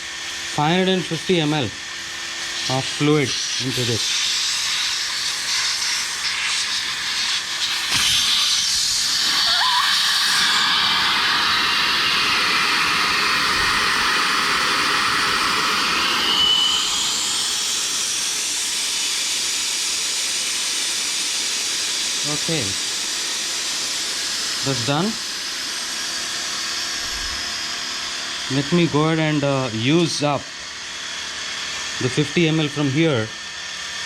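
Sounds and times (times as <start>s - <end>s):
air hissing out of tire valve: 2.1s - 22.4s
brief whistle: 16.1s - 17.6s.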